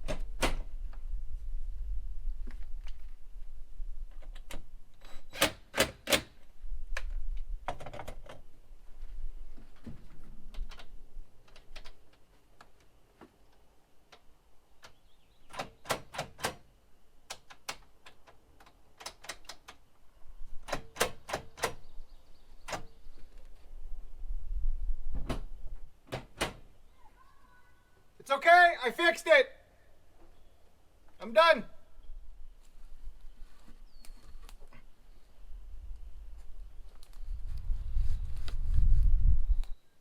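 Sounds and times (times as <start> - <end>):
lock hardware clicking: 4.1 - 6.4, 17.3 - 19.8, 20.6 - 21.9.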